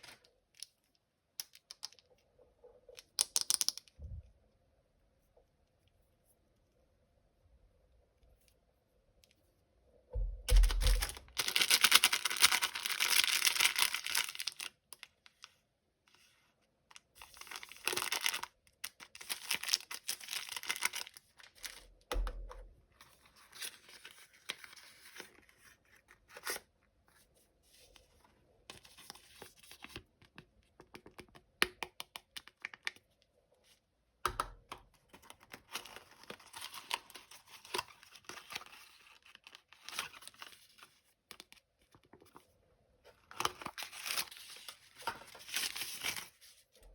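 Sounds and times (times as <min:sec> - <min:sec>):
packaging crinkling and rustling: 0:10.5 - 0:15.1, 0:17.2 - 0:21.9, 0:43.1 - 0:46.9
packaging tearing: 0:10.6 - 0:14.8, 0:17.3 - 0:21.8.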